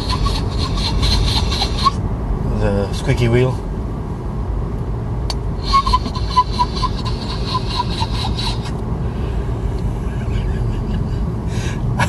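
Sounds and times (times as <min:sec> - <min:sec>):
low car rumble: 0:00.0 - 0:12.0
short high squeaks: 0:05.6 - 0:08.7.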